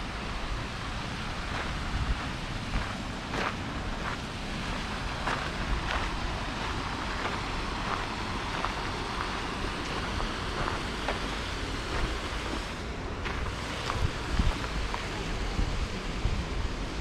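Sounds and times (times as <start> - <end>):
rushing outdoor noise: 0.0 - 17.0
wind buffeting microphone: 0.0 - 17.0
footsteps on a path: 1.5 - 12.6, 13.2 - 15.1.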